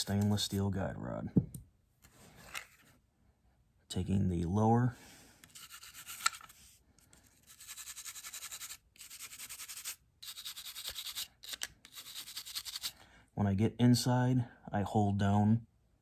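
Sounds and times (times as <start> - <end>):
brush scrubbing: 0.0 - 0.6, 5.5 - 6.3, 7.4 - 12.9.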